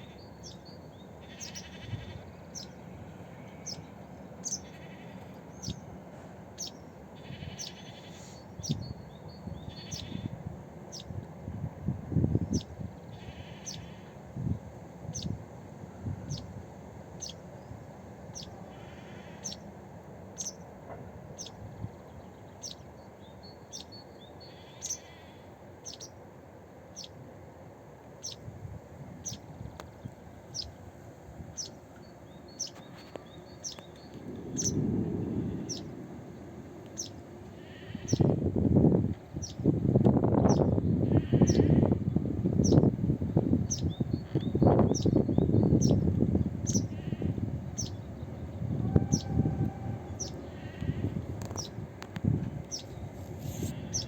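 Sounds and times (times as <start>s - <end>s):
bird chirping: 3.6s - 5.8s, 31.6s - 34.8s, 43.6s - 50.8s
steady background hiss: 22.8s - 43.6s.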